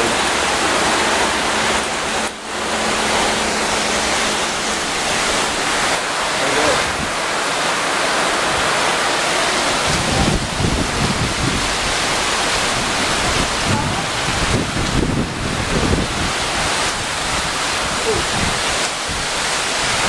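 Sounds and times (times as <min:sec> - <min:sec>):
strong wind blowing: 0:00.0 - 0:20.0
wind buffeting microphone: 0:00.0 - 0:20.0.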